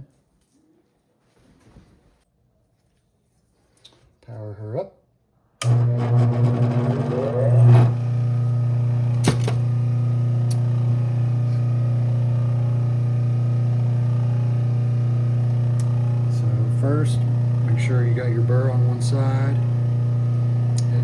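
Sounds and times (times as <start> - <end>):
electric motor humming: 5.6 - 21.0.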